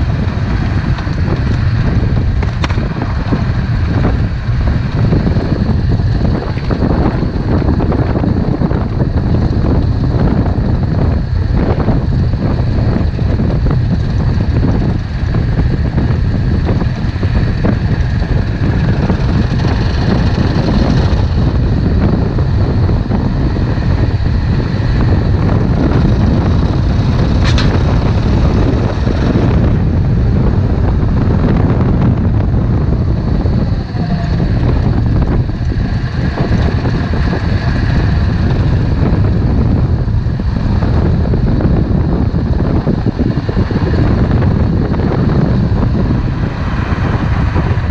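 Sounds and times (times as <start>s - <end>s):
motorcycle engine running: 0.0s - 47.9s
wind buffeting microphone: 0.0s - 47.9s.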